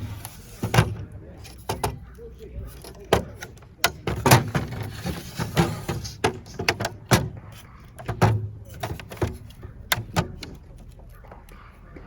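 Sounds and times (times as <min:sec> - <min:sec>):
camping gear rattling and knocking: 0:02.7 - 0:10.8.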